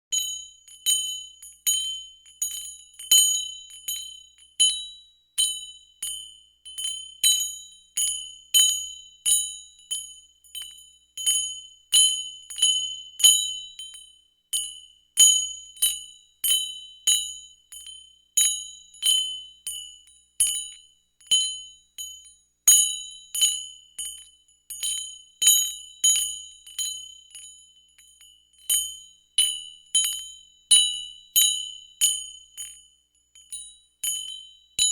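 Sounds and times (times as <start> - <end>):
small bell ringing: 17.7 - 34.9.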